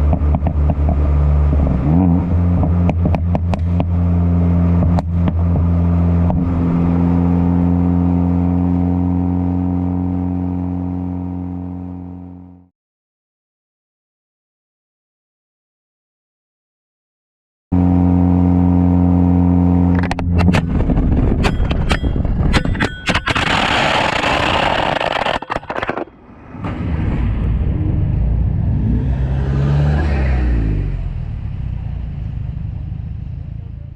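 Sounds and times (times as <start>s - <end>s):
exhaust pops and crackles: 2.6s - 4.0s, 19.9s - 27.6s
car engine revving: 23.2s - 33.9s.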